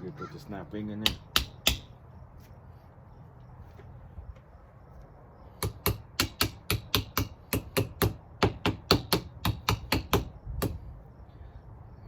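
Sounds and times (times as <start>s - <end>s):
hammer tapping metal: 5.6s - 10.8s.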